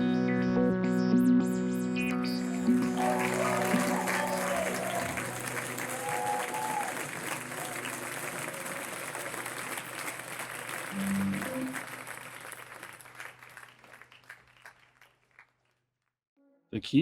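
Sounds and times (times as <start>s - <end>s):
audience applauding: 2.3s - 15.6s.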